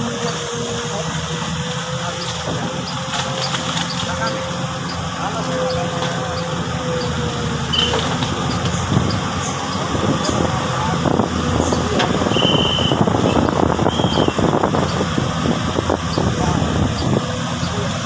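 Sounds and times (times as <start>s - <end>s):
excavator diesel engine running: 0.0s - 18.0s
short high squeaks: 7.6s - 8.6s.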